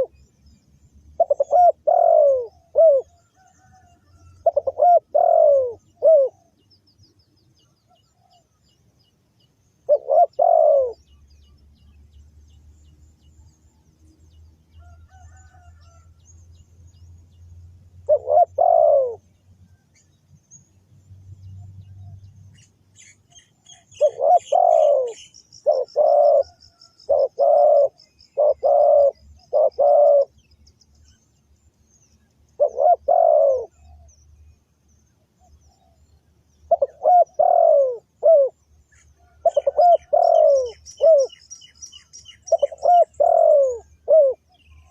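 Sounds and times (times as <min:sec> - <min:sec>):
small birds chirping: 0:00.0 - 0:44.9
dove cooing: 0:01.2 - 0:06.5, 0:09.8 - 0:11.1, 0:18.0 - 0:19.3, 0:23.0 - 0:30.4, 0:32.6 - 0:34.0, 0:36.7 - 0:38.6, 0:39.2 - 0:41.5, 0:42.3 - 0:44.9.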